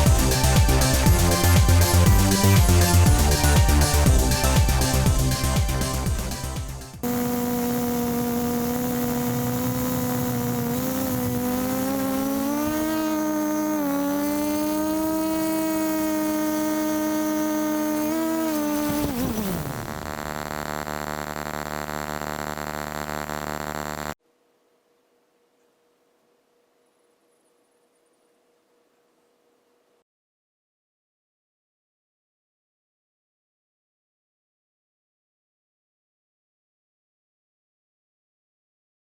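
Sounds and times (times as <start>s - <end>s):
drone motors whining: 7.0s - 24.2s.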